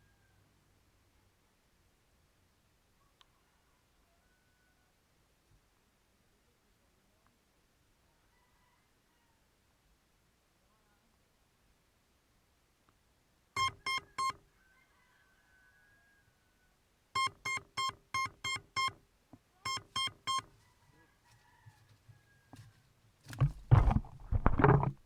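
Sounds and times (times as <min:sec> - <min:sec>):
short electronic beeps: 0:13.6 - 0:14.3
faint thin tones: 0:23.3 - 0:25.0.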